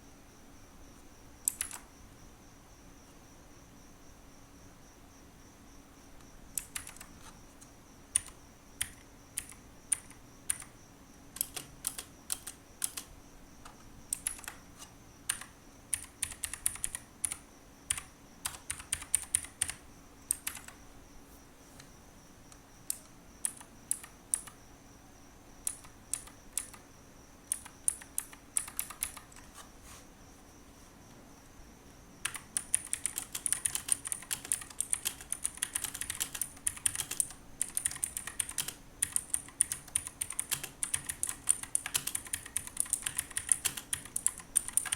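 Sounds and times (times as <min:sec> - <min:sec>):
clicky mechanical keyboard typing: 0:01.4 - 0:01.9, 0:06.6 - 0:10.7, 0:11.4 - 0:20.8, 0:22.9 - 0:24.6, 0:25.6 - 0:26.8, 0:27.5 - 0:29.6, 0:32.2 - 0:44.9.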